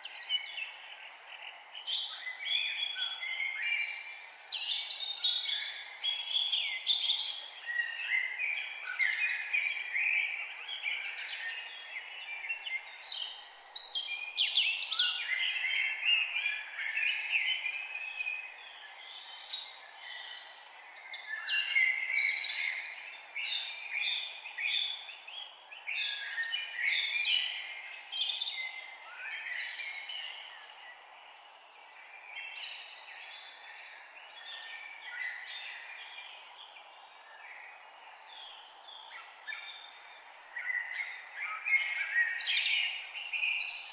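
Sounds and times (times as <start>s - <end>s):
birds singing and chirping: 18.9s - 31.0s, 38.3s - 43.9s.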